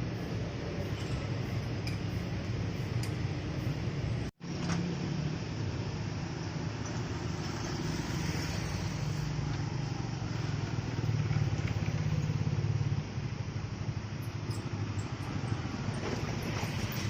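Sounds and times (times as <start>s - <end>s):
motorcycle engine revving and idling: 6.6s - 17.0s.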